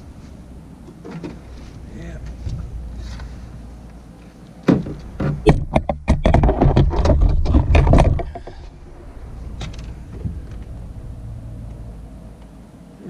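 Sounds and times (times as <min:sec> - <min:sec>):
low rumble: 0:00.0 - 0:04.2, 0:06.2 - 0:13.0
rapid knocks and clattering: 0:04.7 - 0:08.7.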